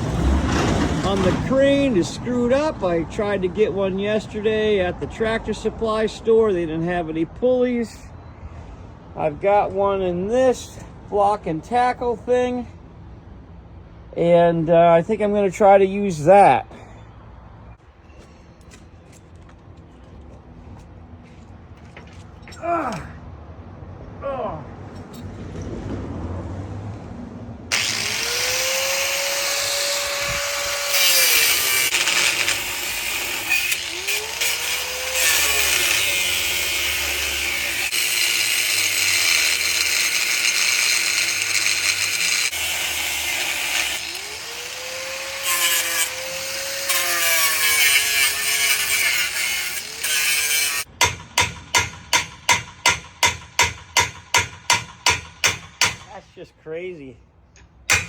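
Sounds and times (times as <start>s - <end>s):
power tool motor running: 27.7s - 50.9s.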